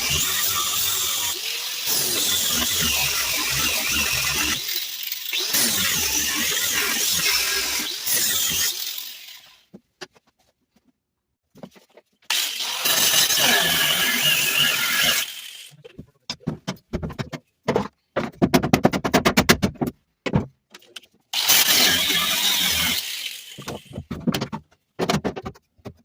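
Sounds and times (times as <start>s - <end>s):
power tool grinding metal: 0.0s - 9.6s, 12.3s - 15.8s, 21.3s - 24.0s.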